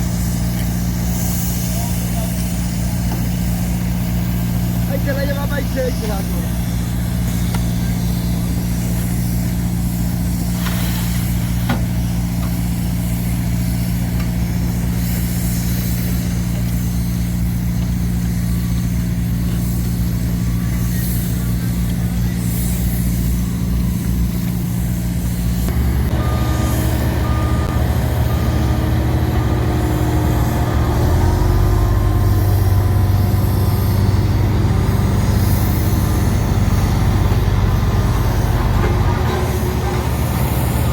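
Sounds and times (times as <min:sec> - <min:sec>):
diesel construction machinery running: 0:00.0 - 0:40.9
reversing beeper pulsing: 0:25.6 - 0:40.9.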